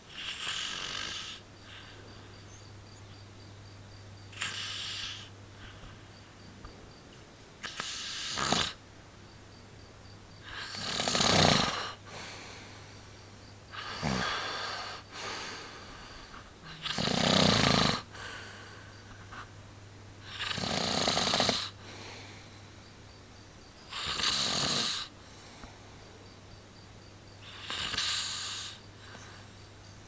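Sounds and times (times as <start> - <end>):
person snoring: 0.0 - 1.9, 4.3 - 5.8, 7.6 - 8.8, 10.4 - 12.8, 13.7 - 18.8, 20.2 - 22.3, 23.9 - 25.1, 27.4 - 29.2.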